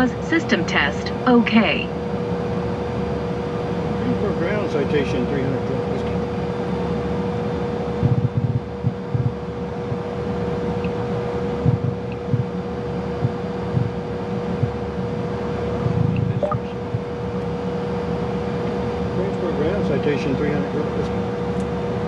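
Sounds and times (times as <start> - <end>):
jet engines idling: 0.0 - 22.0
low thumps: 8.0 - 9.4, 11.6 - 12.5.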